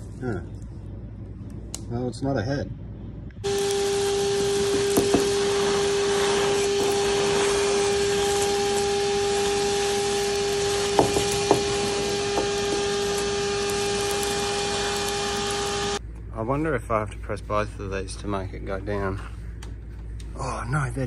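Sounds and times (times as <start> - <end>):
small electric motor whining: 3.4 - 16.0
rushing air: 3.8 - 16.0.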